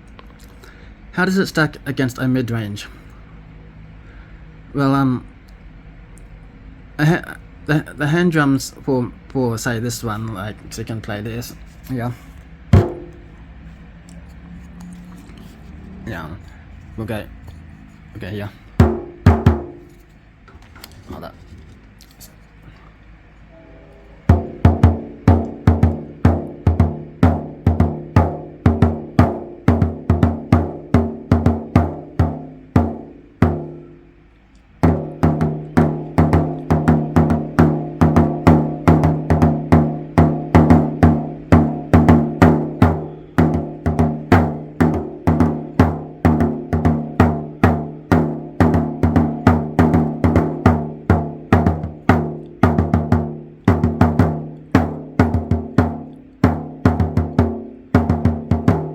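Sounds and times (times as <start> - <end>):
frame drum beating: 12.7 - 13.4, 18.8 - 20.0, 24.3 - 34.2, 34.8 - 58.9.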